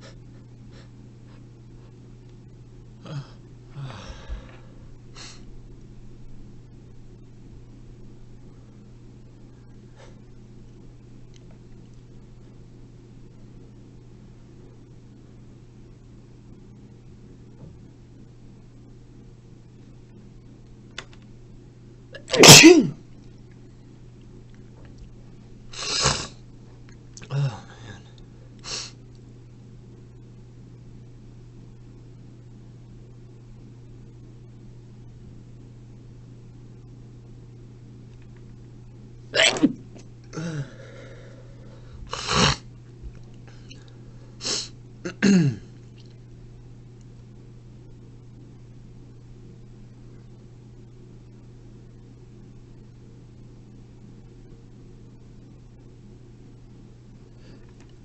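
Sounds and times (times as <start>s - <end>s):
voiced breaths: 3.0s - 5.5s, 40.3s - 42.3s
person sneezing loudly: 22.2s - 23.0s, 39.4s - 39.8s.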